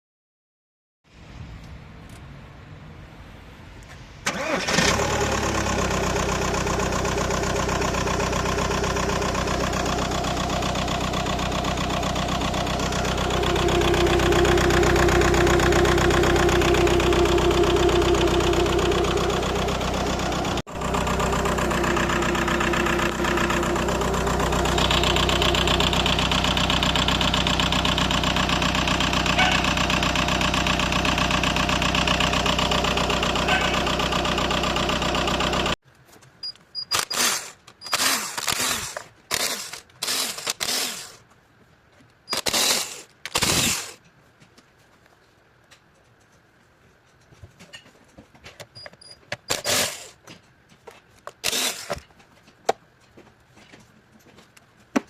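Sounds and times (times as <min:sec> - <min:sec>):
car engine starting: 0:03.9 - 0:35.8
car engine idling rough: 0:04.8 - 0:35.8.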